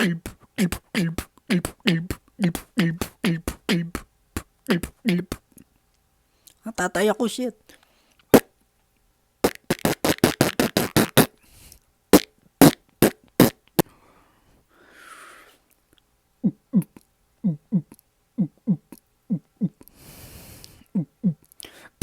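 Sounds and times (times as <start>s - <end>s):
mouth pops: 0.0s - 5.7s, 9.4s - 11.3s, 12.2s - 13.9s
mouth hiss: 9.4s - 13.9s.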